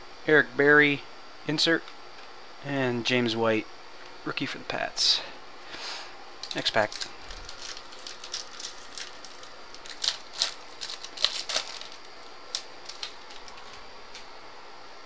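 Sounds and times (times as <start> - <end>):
card wrapper crinkling: 6.4 - 14.2.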